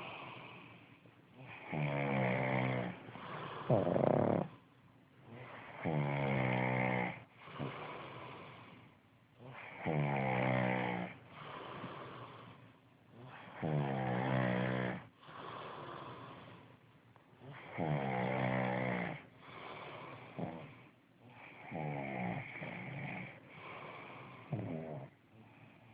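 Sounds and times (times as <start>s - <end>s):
person snoring: 1.4s - 4.6s, 5.3s - 8.8s, 9.4s - 16.7s, 17.4s - 25.9s.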